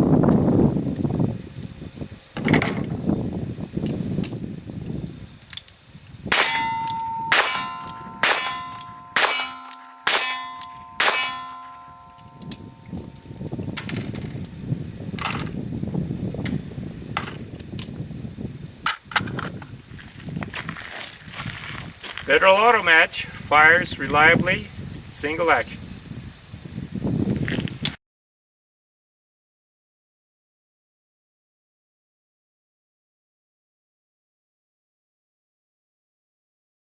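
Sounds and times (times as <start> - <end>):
revolver shots with metallic ringing: 6.3 - 13.3.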